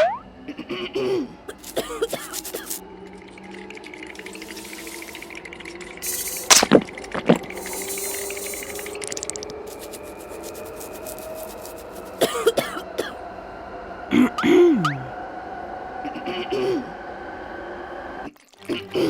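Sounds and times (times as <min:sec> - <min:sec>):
underground train running hum: 0:00.1 - 0:09.0, 0:09.6 - 0:18.3
bursts of hiss: 0:06.0 - 0:12.2.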